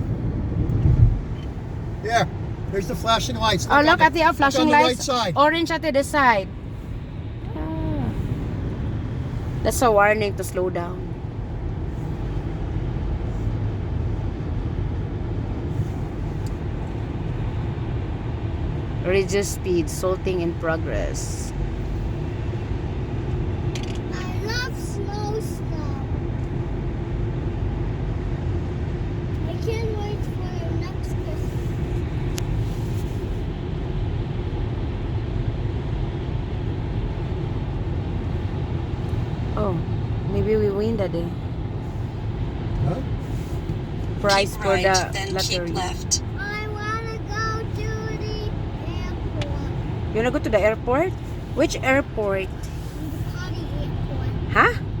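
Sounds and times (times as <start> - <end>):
car driving heard from inside: 0.0 - 55.0
tyres on road: 0.0 - 55.0.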